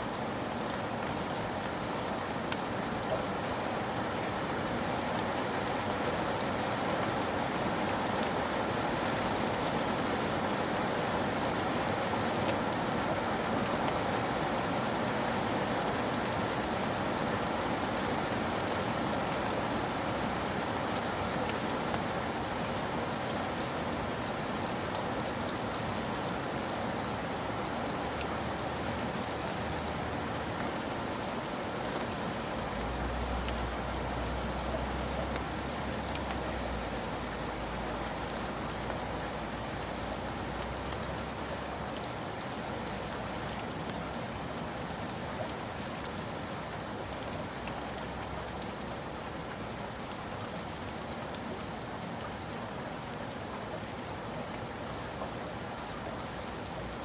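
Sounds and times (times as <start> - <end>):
steady rainfall: 0.0 - 57.0.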